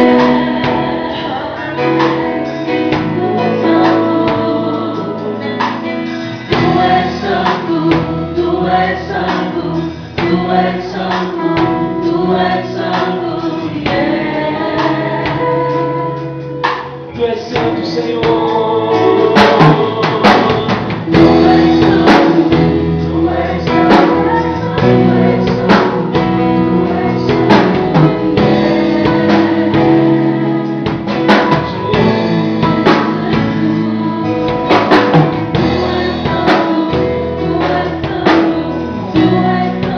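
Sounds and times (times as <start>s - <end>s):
voices singing worship song: 0.0s - 39.9s
drum strokes: 13.8s - 39.9s.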